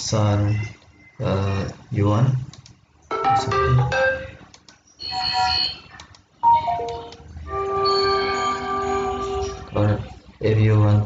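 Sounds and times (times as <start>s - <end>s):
melodic notification chimes: 6.4s - 9.7s.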